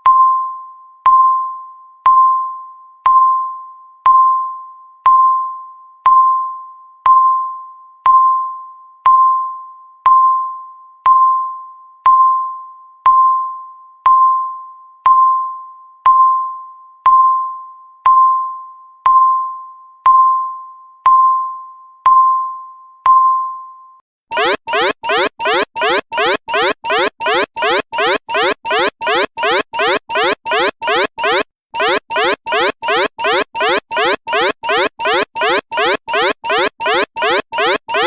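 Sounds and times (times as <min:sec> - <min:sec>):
countdown timer beeps: 0:24.3 - 0:38.0.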